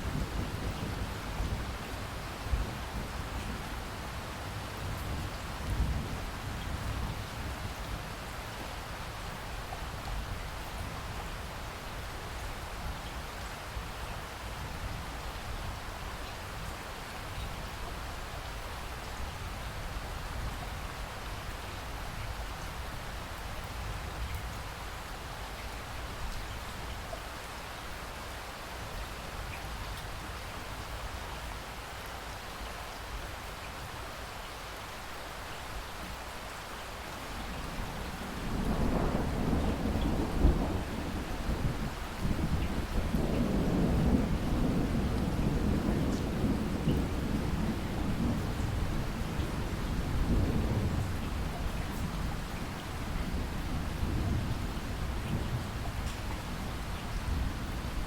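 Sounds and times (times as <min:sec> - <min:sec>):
low rumble of thunder: 0:00.0 - 0:13.2, 0:37.2 - 0:58.0
steady rain patter: 0:00.0 - 0:58.0.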